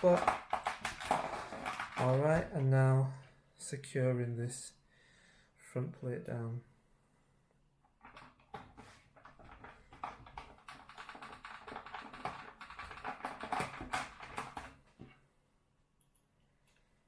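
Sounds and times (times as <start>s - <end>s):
tool clicking on plastic: 0.0s - 2.4s, 8.0s - 14.8s.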